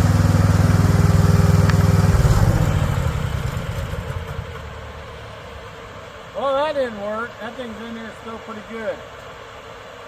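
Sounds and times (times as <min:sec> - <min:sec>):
construction machine engine pulsing: 0:00.0 - 0:05.9.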